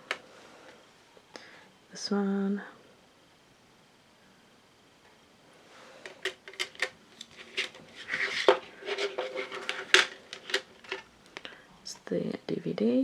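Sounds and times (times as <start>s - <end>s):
plastic disc case clicks: 6.1s - 11.5s.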